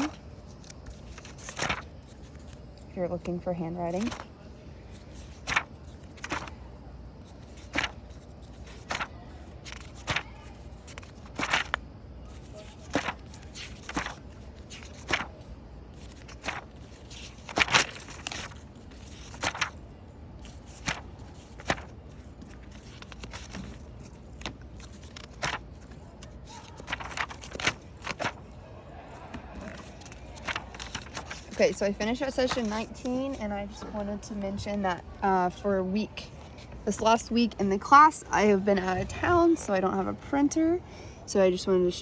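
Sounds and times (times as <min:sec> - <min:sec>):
notebook pages turning: 0:00.0 - 0:02.6, 0:03.8 - 0:04.3, 0:04.9 - 0:34.8.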